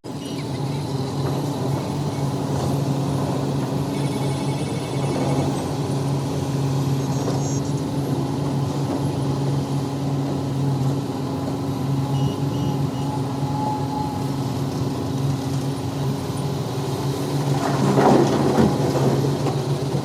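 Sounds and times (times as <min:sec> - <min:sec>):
heavy diesel engine running: 0:00.0 - 0:20.0
short high beeps: 0:03.9 - 0:05.4, 0:12.1 - 0:14.3.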